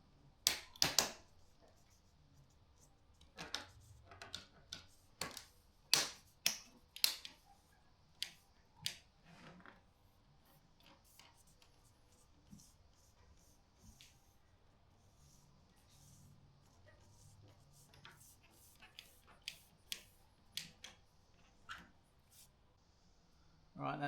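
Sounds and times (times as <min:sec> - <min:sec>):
plastic clicks and snaps: 0:03.3 - 0:07.4.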